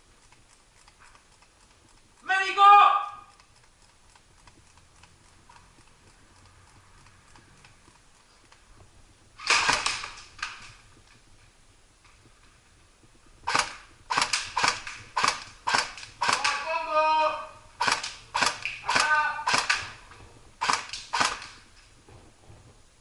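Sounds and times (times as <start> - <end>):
airsoft guns firing: 9.4 - 10.7, 13.5 - 20.0, 20.6 - 21.6.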